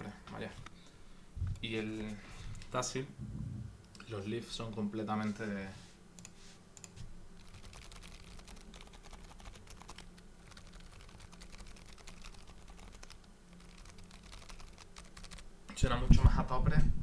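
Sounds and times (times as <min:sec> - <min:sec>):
quiet keyboard typing: 0:06.2 - 0:15.5.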